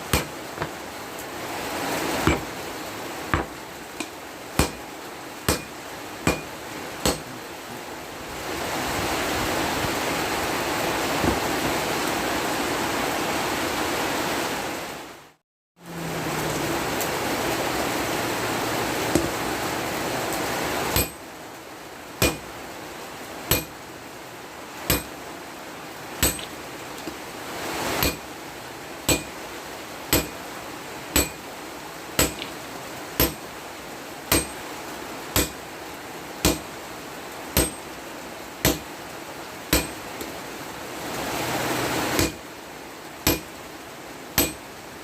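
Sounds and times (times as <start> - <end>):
hammer striking steel blade: 0.0 - 0.7, 2.3 - 2.5, 3.4 - 4.8, 5.5 - 7.3, 21.0 - 21.2, 22.2 - 22.4, 23.5 - 23.7, 24.9 - 25.1, 26.2 - 26.5, 28.0 - 28.2, 29.1 - 29.4, 30.1 - 30.4, 31.2 - 31.4, 32.2 - 32.5, 33.2 - 33.4, 34.3 - 34.6, 35.4 - 35.6, 36.4 - 36.7, 37.6 - 37.8, 38.6 - 38.8, 39.7 - 40.3, 42.2 - 42.4, 43.3 - 43.5, 44.4 - 44.6
steady rushing hiss: 0.0 - 12.7.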